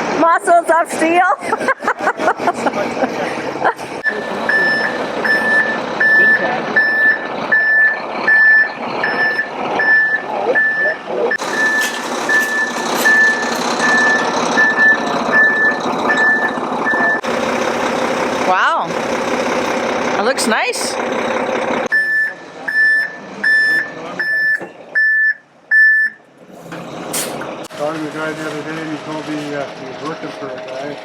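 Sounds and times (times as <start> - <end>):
truck engine running: 0.0 - 31.0
reversing alarm beeping: 4.0 - 17.3, 21.8 - 26.2.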